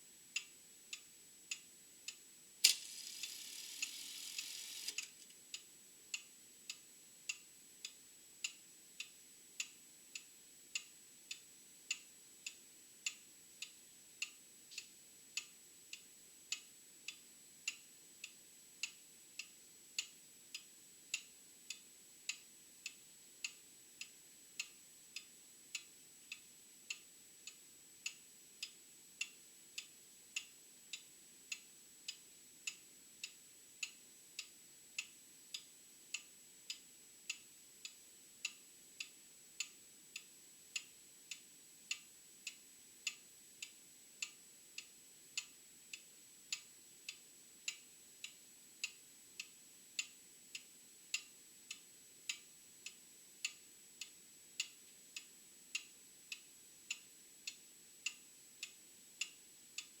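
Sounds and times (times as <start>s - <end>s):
mechanical clock ticking: 1.5s - 5.6s.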